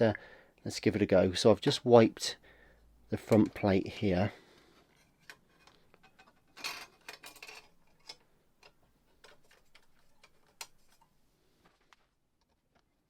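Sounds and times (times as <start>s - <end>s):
plastic parts clicking: 5.2s - 11.1s.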